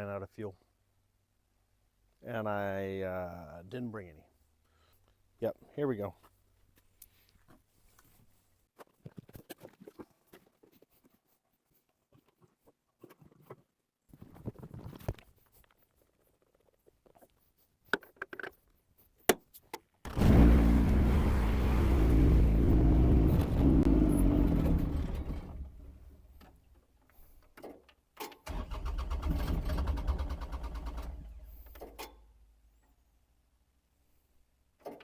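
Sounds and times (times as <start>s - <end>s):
small diesel engine starting: 20.1s - 26.2s, 28.4s - 31.8s.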